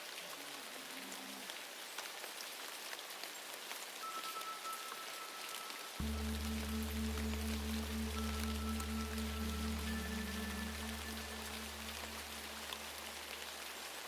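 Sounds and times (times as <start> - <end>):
rain pattering: 0.0 - 4.4, 5.0 - 14.0
loud low drone: 6.0 - 13.4
soft held musical notes: 6.0 - 13.4.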